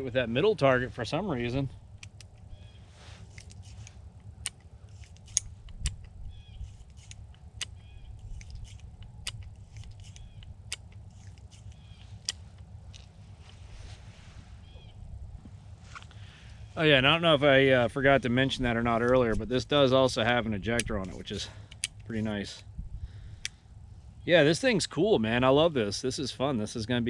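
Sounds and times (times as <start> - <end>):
birds chirping: 0.0 - 27.0
low steady rumble: 0.0 - 27.0
revolver metallic clicks: 1.8 - 13.6, 20.6 - 22.4.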